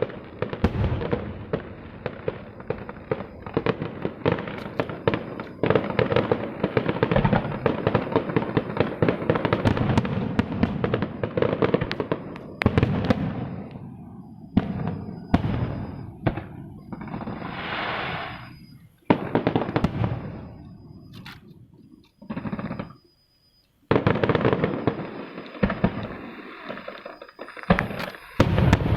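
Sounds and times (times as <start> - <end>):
fireworks bangs and crackles: 0.0 - 28.9
fireworks hissing: 16.8 - 20.1, 24.0 - 28.9.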